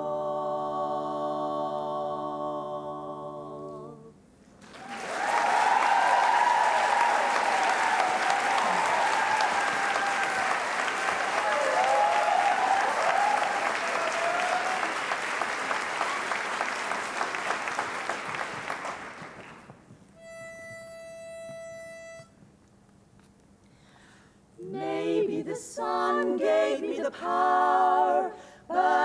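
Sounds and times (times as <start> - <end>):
high cheers: 4.6 - 19.6
audience applause: 4.6 - 19.8
pitch pipe note: 20.2 - 22.4.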